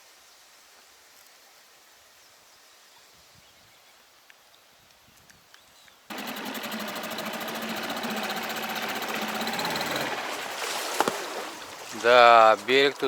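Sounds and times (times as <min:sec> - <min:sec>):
outboard boat motor running: 0:06.1 - 0:11.8.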